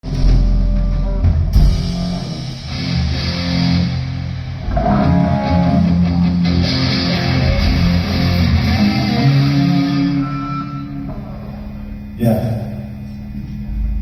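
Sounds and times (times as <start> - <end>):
sharp drum hit: 0.0 - 2.8
bass guitar low notes: 0.0 - 14.0
electric guitar sustained notes: 0.0 - 14.0.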